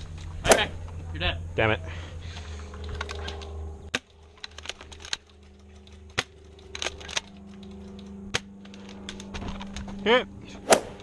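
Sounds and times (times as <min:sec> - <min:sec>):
airsoft guns firing: 0:00.5 - 0:00.8.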